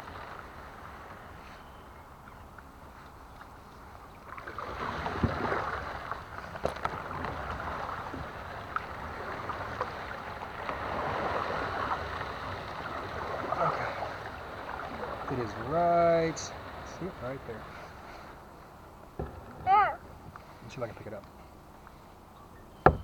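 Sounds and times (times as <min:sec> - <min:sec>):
kayak paddle splashing water: 0:00.0 - 0:22.1
sharp knocks: 0:19.1 - 0:20.5.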